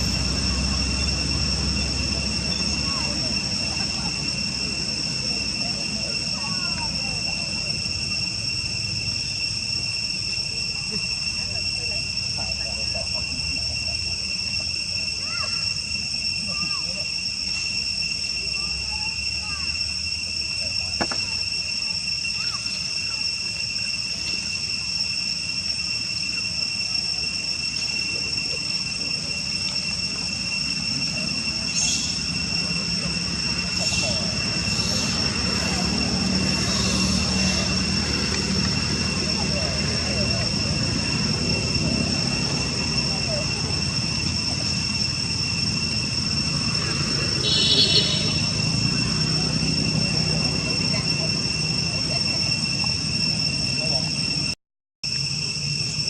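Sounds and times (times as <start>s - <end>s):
high-pitched insect drone: 0.0s - 56.0s
brief high-pitched call: 46.8s - 51.8s.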